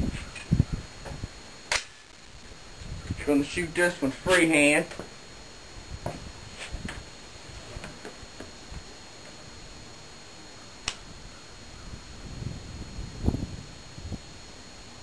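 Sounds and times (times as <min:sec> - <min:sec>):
steady hiss: 0:00.0 - 0:15.0
sharp click: 0:01.7 - 0:02.1, 0:10.8 - 0:11.0.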